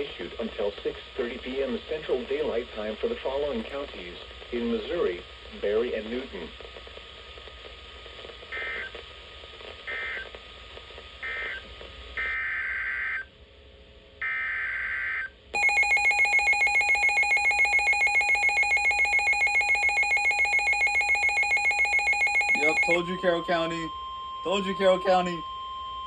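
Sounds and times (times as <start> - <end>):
rapidly pulsing alert tone: 15.6 - 23.9
screeching data bursts: 17.8 - 23.9.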